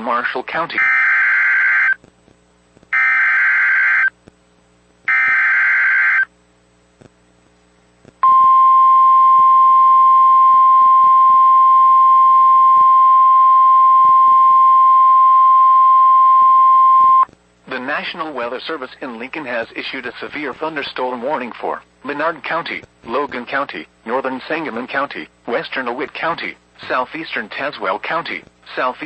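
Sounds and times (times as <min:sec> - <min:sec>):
steady alarm tone: 0:00.8 - 0:02.0, 0:02.9 - 0:04.1, 0:05.1 - 0:06.3.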